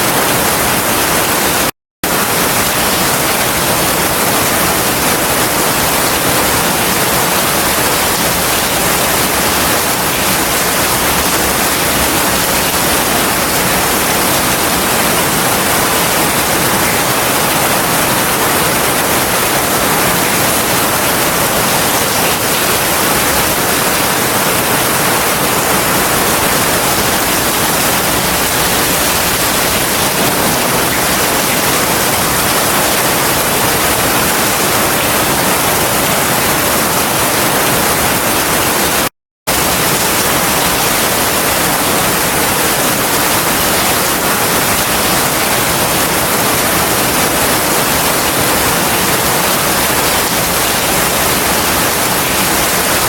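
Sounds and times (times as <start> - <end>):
heavy rain hissing: 2.2 - 35.5.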